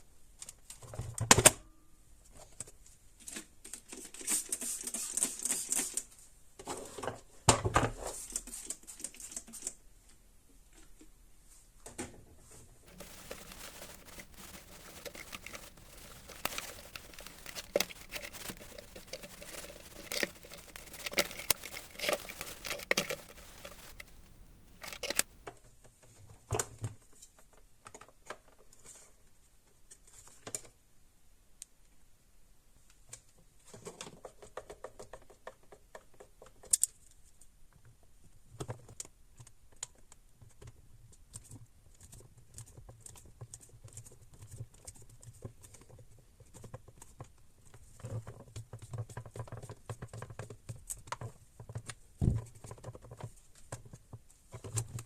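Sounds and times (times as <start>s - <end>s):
plastic parts clicking and scraping: 12.9s - 25.4s.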